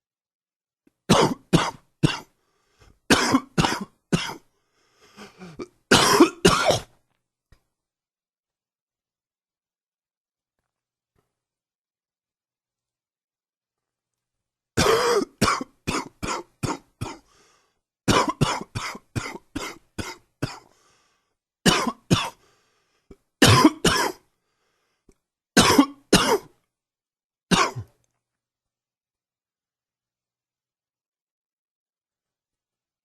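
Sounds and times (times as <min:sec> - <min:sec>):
man coughing: 0:01.1 - 0:02.3, 0:03.1 - 0:04.4, 0:05.2 - 0:06.9, 0:14.8 - 0:17.3, 0:18.1 - 0:20.7, 0:21.7 - 0:22.4, 0:23.4 - 0:24.2, 0:25.6 - 0:26.6, 0:27.5 - 0:27.9.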